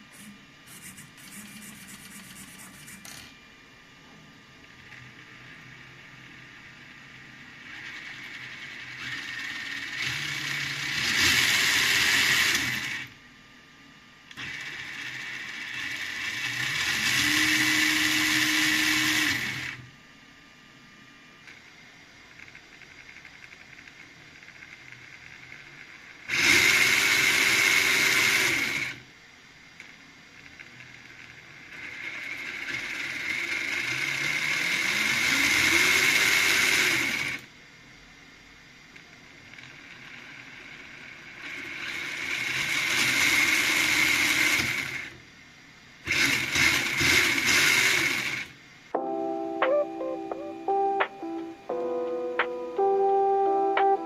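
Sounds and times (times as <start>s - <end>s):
electric motor whirring: 0.0s - 3.2s, 14.3s - 19.8s.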